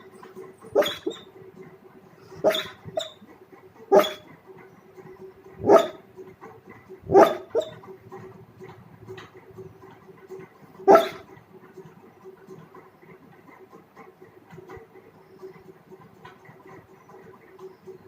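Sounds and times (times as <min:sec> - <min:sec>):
dog barking in sleep: 0:00.7 - 0:01.3, 0:02.4 - 0:03.3, 0:03.9 - 0:04.3, 0:05.6 - 0:06.0, 0:07.1 - 0:07.8, 0:10.9 - 0:11.3.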